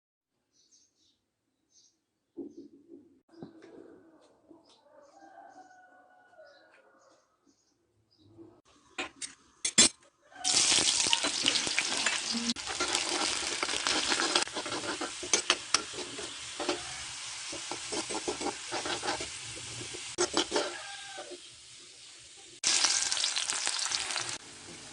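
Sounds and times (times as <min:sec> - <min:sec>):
food sizzling in hot oil: 0:10.4 - 0:24.9
spoon scraping a pan: 0:10.5 - 0:21.6.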